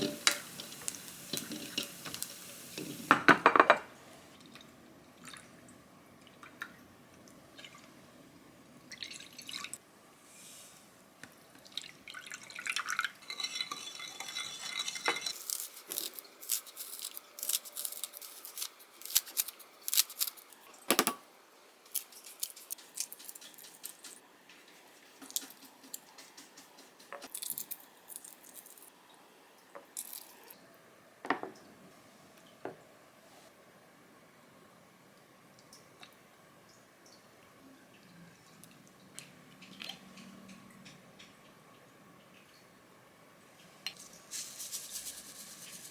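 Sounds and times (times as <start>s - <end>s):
dishes and utensils clicking: 13.2s - 16.2s.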